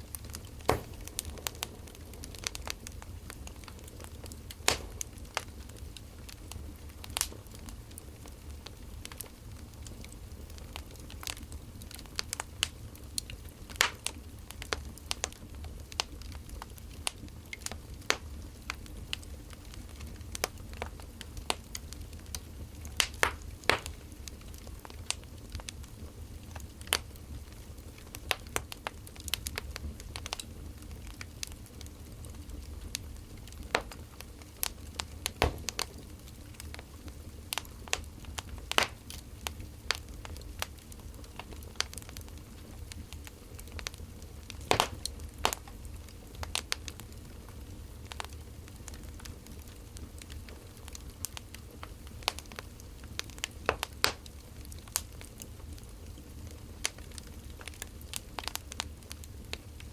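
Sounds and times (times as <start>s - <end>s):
low steady rumble: 0.0s - 9.0s
firewood crackling and popping: 0.0s - 59.9s.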